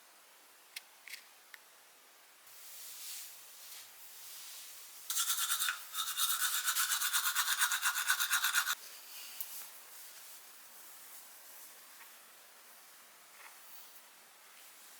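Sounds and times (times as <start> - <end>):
toothbrush scrubbing teeth: 5.1 - 8.8.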